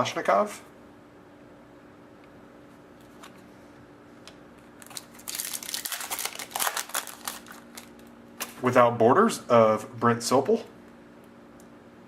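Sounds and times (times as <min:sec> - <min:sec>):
plastic wrapper crinkling: 0:04.6 - 0:08.6.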